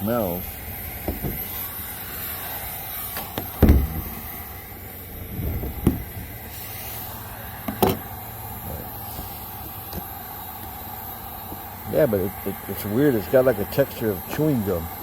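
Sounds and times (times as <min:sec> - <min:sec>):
heating tool hissing: 0:00.0 - 0:15.0
knocks and thumps: 0:01.0 - 0:01.4, 0:03.6 - 0:04.2, 0:05.3 - 0:06.3.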